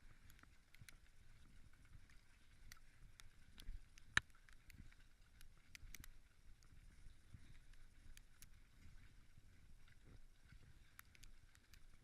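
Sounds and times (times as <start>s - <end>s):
hooves and tack clicking: 9.9s - 12.0s.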